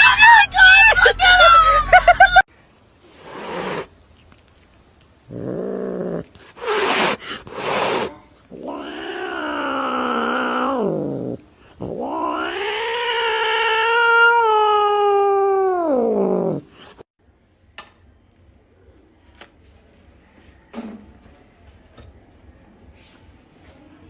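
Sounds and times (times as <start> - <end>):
cat hissing: 3.0 - 3.9, 5.3 - 17.1
cat yowling: 6.7 - 16.6.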